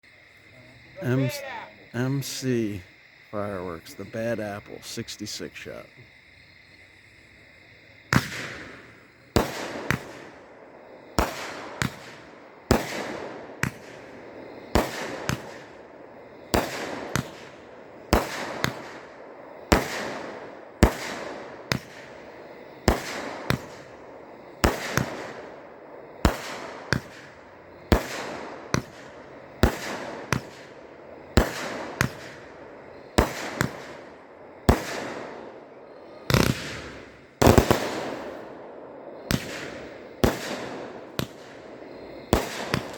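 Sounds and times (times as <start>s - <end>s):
firework cake bangs: 8.1s - 10.4s, 11.1s - 15.8s, 16.5s - 22.2s, 22.8s - 24.0s, 24.6s - 25.6s, 26.2s - 38.5s, 39.2s - 42.9s.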